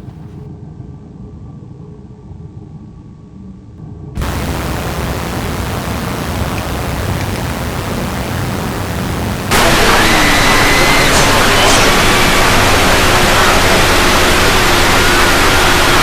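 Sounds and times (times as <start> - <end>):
loud static hiss: 4.2 - 16.0.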